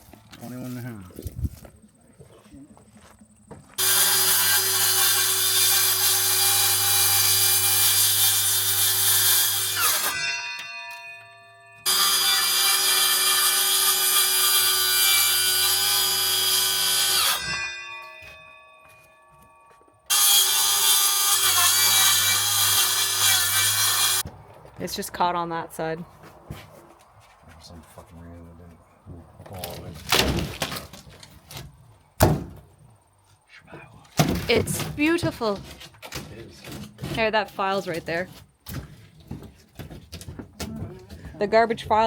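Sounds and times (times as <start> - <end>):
electric saw cutting wood: 3.8 - 11.2, 11.8 - 18.4, 20.1 - 24.3.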